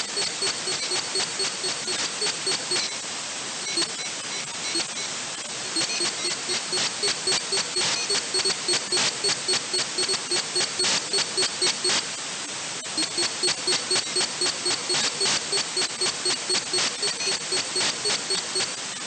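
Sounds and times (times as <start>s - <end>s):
two-tone radio pulses: 0.0s - 3.0s, 5.8s - 12.1s, 12.9s - 18.8s
steady radio hiss: 0.0s - 19.0s.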